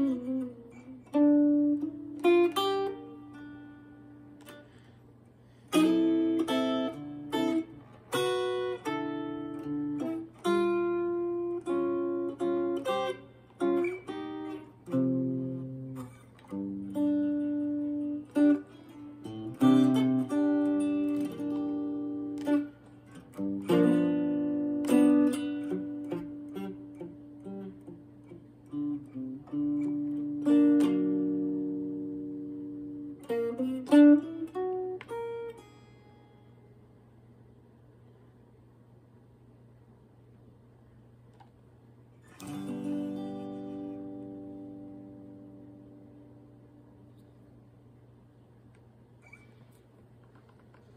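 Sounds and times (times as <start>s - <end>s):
acoustic guitar blues: 5.7s - 36.0s, 42.3s - 46.0s.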